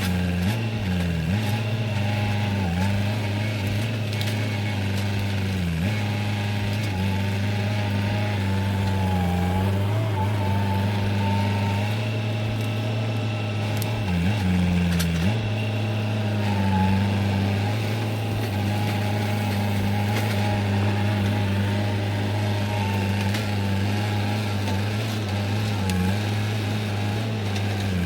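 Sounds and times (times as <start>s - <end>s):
diesel engine running: 0.0s - 28.0s
hydraulic whine: 0.0s - 28.0s.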